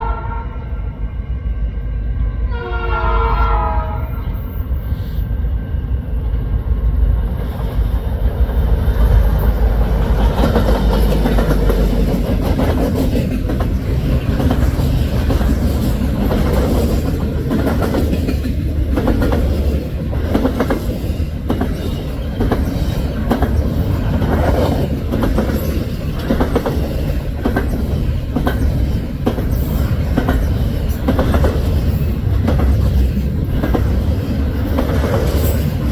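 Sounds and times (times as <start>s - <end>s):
train air horn: 0.0s - 0.9s, 2.5s - 4.6s
diesel locomotive engine rumble: 0.0s - 35.9s
train wheels clacking: 6.3s - 35.9s.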